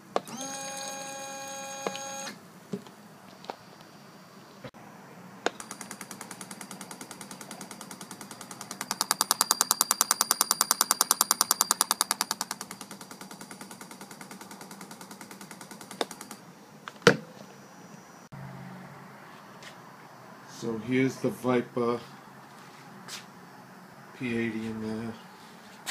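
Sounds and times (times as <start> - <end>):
fast even clicking: 5.5 - 16.4.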